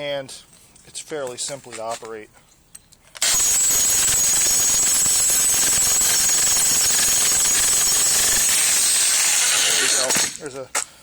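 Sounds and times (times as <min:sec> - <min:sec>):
jackhammer hammering concrete: 0:03.2 - 0:10.4.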